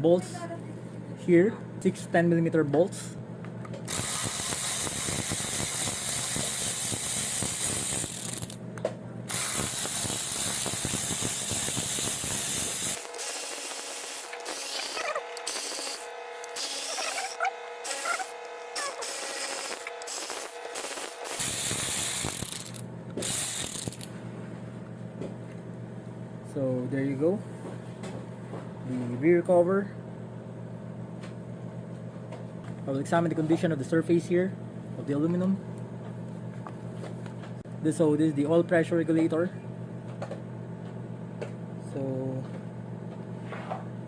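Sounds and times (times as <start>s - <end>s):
ratchet wrench clicking: 3.9s - 8.6s, 9.3s - 24.1s.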